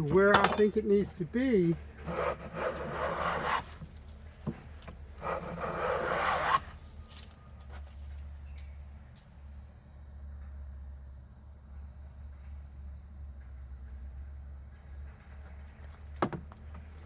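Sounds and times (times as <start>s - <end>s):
hand plane strokes on wood: 2.0s - 6.8s.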